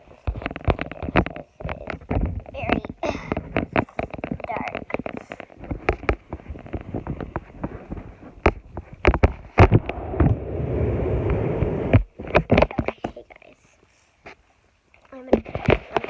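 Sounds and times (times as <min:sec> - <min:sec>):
rubbing rumble: 0:00.0 - 0:13.3
toys knocking and clattering: 0:00.2 - 0:09.7, 0:12.2 - 0:13.3.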